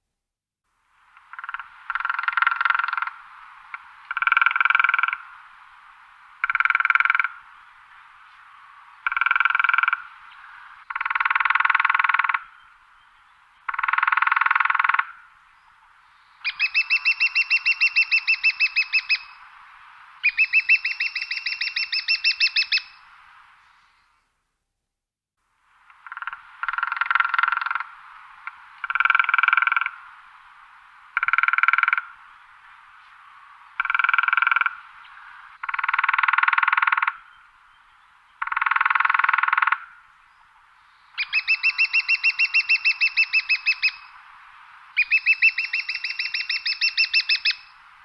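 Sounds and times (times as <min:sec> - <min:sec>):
woodpecker drumming on wood: 0:01.2 - 0:05.2, 0:06.4 - 0:07.4, 0:09.0 - 0:10.1, 0:10.9 - 0:12.5, 0:13.7 - 0:15.1, 0:25.9 - 0:30.0, 0:31.2 - 0:32.1, 0:33.8 - 0:34.8, 0:35.6 - 0:37.2, 0:38.4 - 0:39.9.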